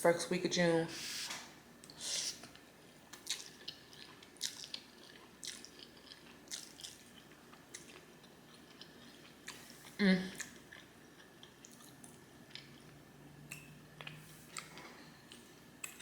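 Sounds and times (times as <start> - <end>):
wet chewing mouth clicks: 1.8 - 9.7.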